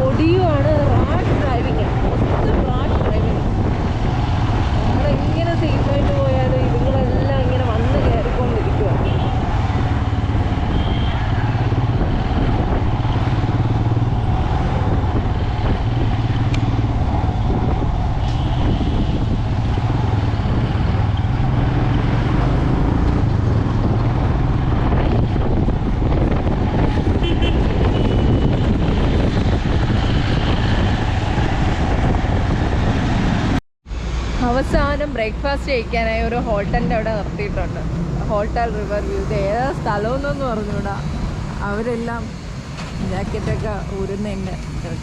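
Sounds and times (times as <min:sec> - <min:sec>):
road noise: 0:00.0 - 0:45.0.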